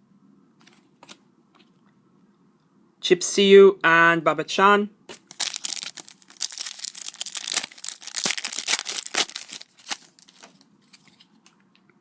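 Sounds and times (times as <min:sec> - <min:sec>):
foil wrapper crinkling and tearing: 0:05.2 - 0:11.1.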